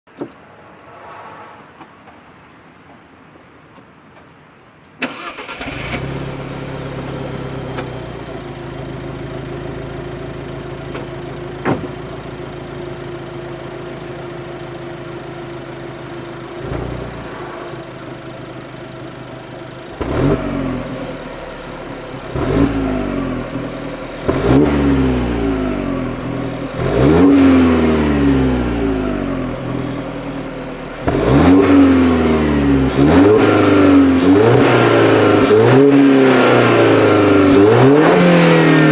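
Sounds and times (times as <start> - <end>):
car engine revving: 5.0 - 38.9
car engine starting and idling: 5.0 - 38.9.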